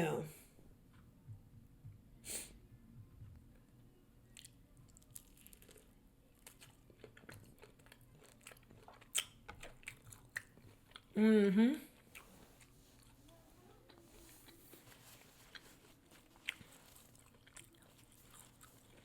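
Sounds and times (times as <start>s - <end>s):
faint chewing crunches: 4.3s - 11.2s, 12.0s - 19.0s.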